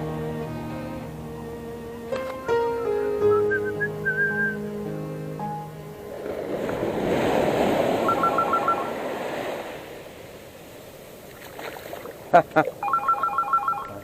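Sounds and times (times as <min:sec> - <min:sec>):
sea wave breaking on beach: 0:06.0 - 0:12.3
quick electronic beeps: 0:08.0 - 0:08.9, 0:12.8 - 0:14.0.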